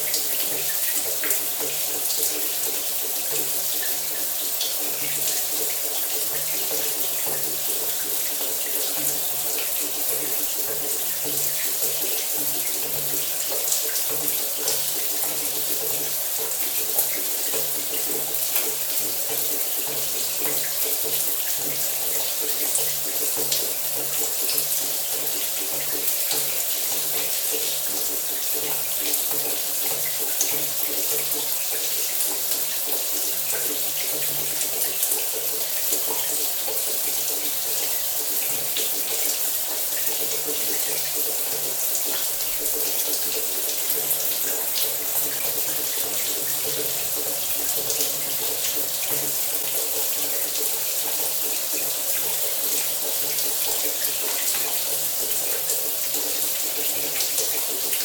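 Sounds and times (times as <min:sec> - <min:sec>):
shower water spraying: 0:37.6 - 0:52.1.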